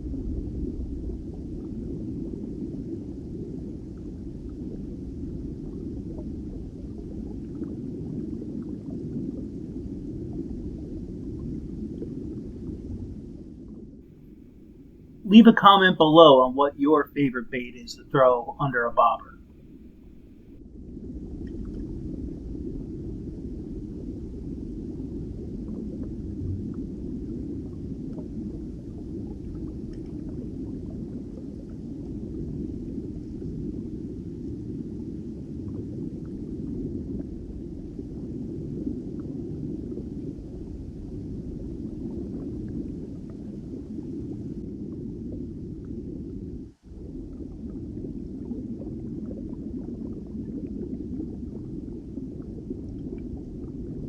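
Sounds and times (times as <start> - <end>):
underwater low rumble: 39.3 - 54.0.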